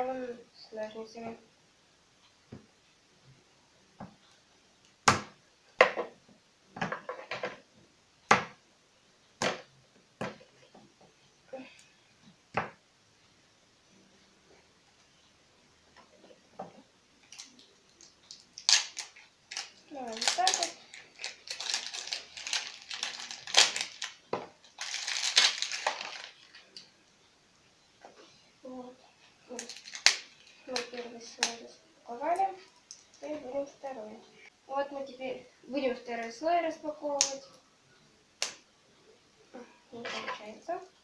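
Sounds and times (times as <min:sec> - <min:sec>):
plastic wrapping crinkling and tearing: 0:17.2 - 0:26.8, 0:29.5 - 0:31.6.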